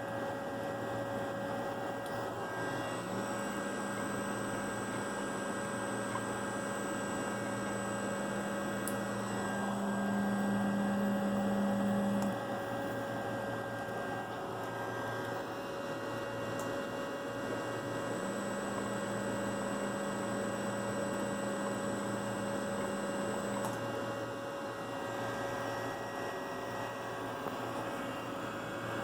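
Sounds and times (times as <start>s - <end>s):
faint high whine: 0.0s - 29.0s
servomotor electrical hum: 0.0s - 29.0s
click: 8.8s - 9.0s, 12.1s - 12.4s.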